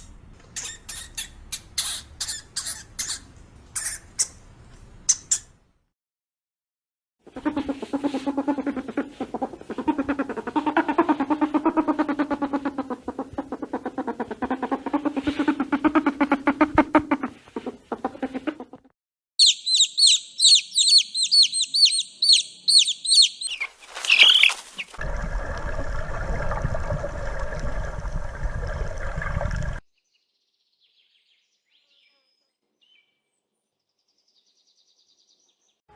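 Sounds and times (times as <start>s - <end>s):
fast pulsing animal call: 7.3s - 17.1s, 19.4s - 25.0s
high bird chirps: 19.4s - 25.0s.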